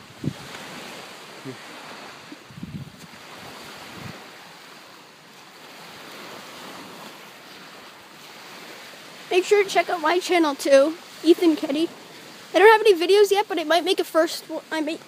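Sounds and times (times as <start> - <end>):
wind on microphone: 0.0 - 5.0
waves washing onto a beach: 0.0 - 15.0.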